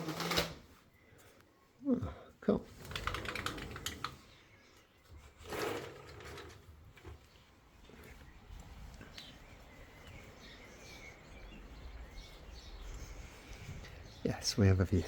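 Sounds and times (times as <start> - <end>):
bird chirps: 7.3 - 15.0.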